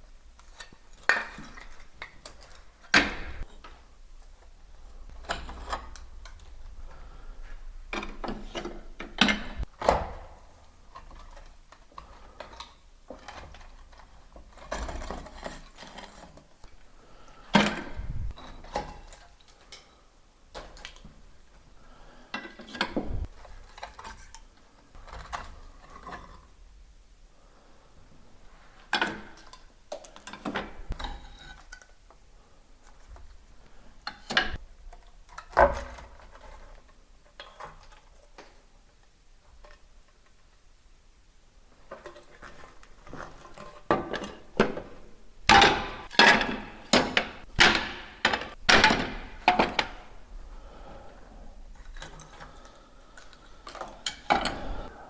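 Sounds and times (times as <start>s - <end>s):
ceramic tiles being knocked loose: 43.9s - 50.2s.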